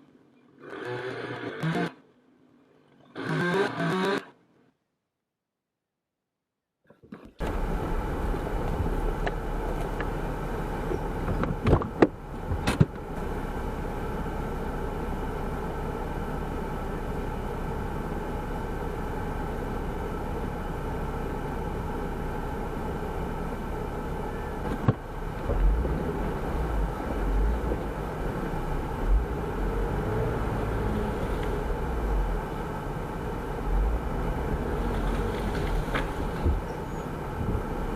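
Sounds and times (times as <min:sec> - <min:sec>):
engine running steadily: 0:07.4 - 0:37.9
low rumbling thumps: 0:07.5 - 0:13.1, 0:24.6 - 0:29.6, 0:34.4 - 0:37.9.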